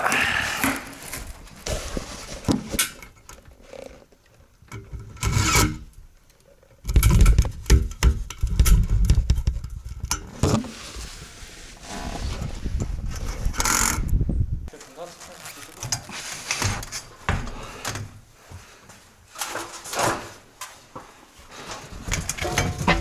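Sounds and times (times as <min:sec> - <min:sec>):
heavy thumps and clatter: 0:06.9 - 0:10.6, 0:22.0 - 0:23.0
metal pipe scraping and rubbing: 0:22.2 - 0:23.0.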